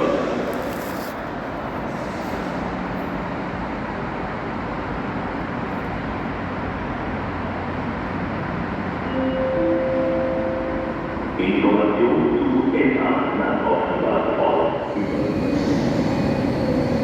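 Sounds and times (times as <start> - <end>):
train rushing rumble: 0.0 - 9.1, 10.3 - 17.0
held tone: 9.1 - 11.1.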